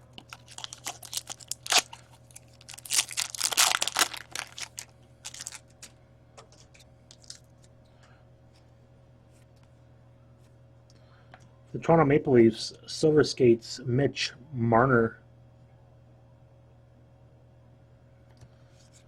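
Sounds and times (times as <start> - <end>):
wrapper crinkling and tearing: 0.2 - 5.9, 6.7 - 7.7.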